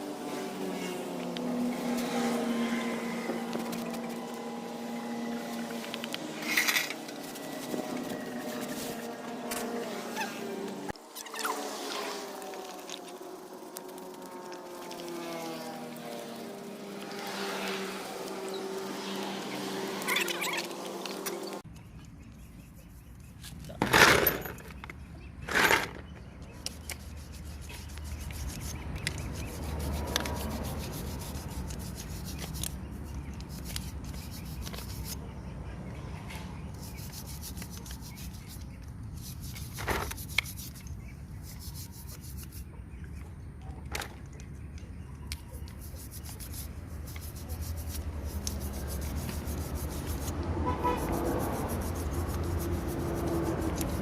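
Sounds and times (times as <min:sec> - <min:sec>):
hand rubbing and scraping a part: 0:03.0 - 0:15.5, 0:22.6 - 0:35.2, 0:36.7 - 0:42.7, 0:45.3 - 0:54.0.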